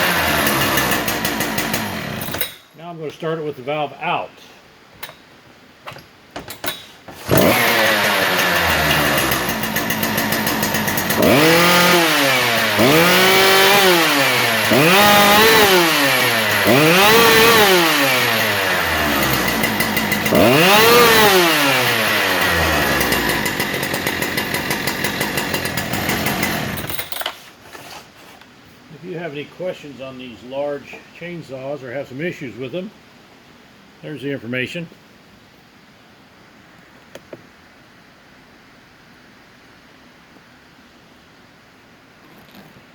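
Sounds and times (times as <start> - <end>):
chainsaw starting and revving: 0.0 - 2.6, 7.1 - 27.4.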